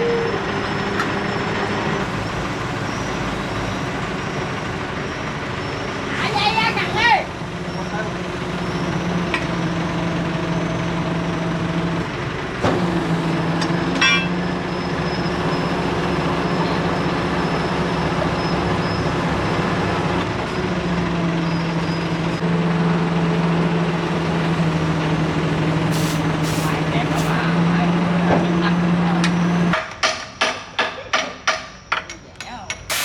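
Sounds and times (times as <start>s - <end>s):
engine running: 0.0s - 7.6s, 19.3s - 28.4s
broad hiss: 25.9s - 27.6s.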